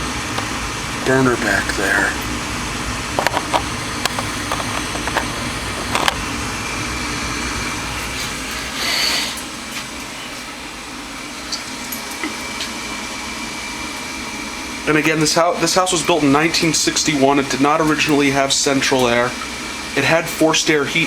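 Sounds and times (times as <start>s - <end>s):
gas furnace running: 0.0s - 21.0s
short hiss: 8.0s - 10.5s.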